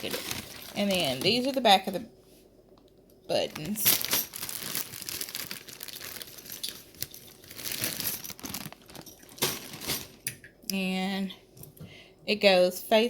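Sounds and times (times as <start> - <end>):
packaging crinkling: 0.0 - 1.8, 3.4 - 10.2.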